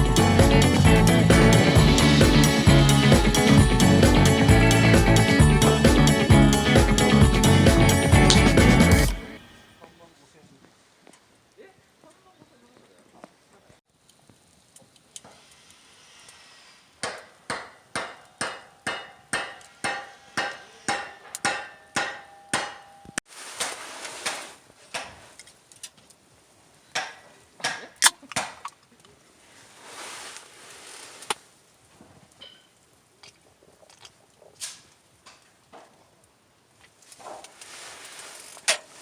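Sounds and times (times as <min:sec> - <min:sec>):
hammer strikes with metallic ring: 0:17.0 - 0:23.2
rustling: 0:23.3 - 0:27.5, 0:28.8 - 0:39.0.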